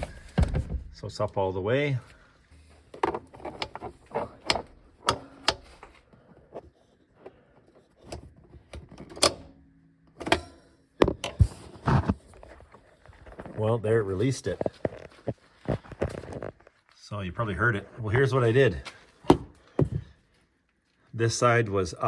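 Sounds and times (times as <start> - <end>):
seat latch clicking and clunking: 3.0 - 5.9, 8.1 - 9.5.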